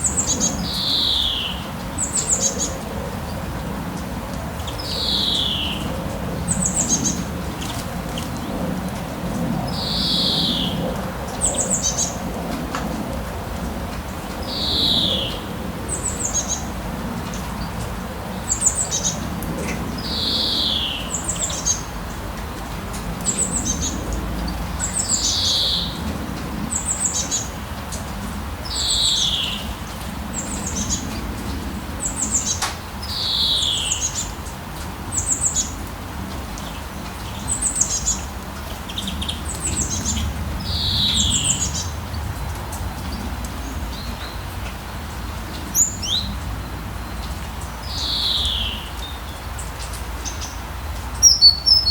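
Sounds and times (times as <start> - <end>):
bird high chirping phrases: 51.2 - 51.9.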